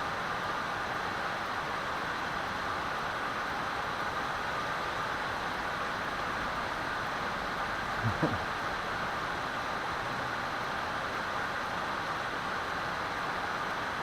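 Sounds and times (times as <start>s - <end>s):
static hiss: 5.9s - 8.8s.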